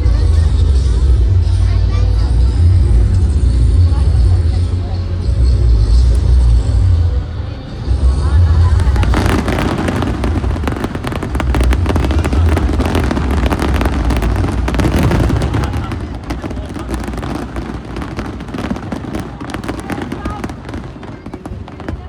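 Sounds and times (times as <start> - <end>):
fireworks crackling: 8.4 - 22.0
fireworks booming: 8.7 - 22.0.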